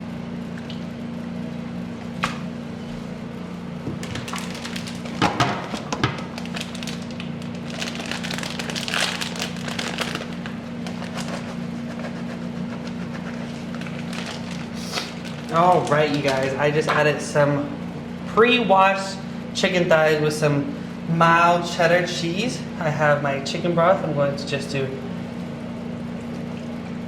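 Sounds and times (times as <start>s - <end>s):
steady low hum: 0.0s - 27.0s
crinkly rustling: 4.0s - 11.9s, 13.3s - 16.8s.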